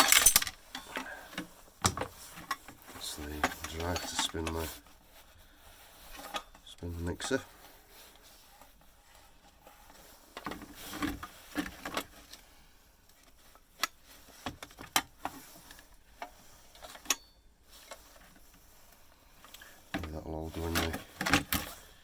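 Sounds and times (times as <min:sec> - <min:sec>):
metal and plastic parts clicking: 0:00.0 - 0:04.8, 0:13.8 - 0:18.2, 0:19.4 - 0:21.8.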